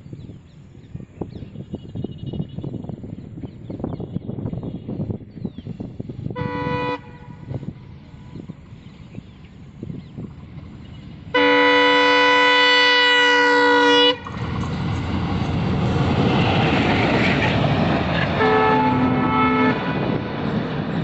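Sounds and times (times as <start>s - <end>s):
train rushing past: 5.9s - 21.0s
locomotive horn blast: 6.3s - 8.4s, 11.3s - 14.5s, 18.3s - 20.2s.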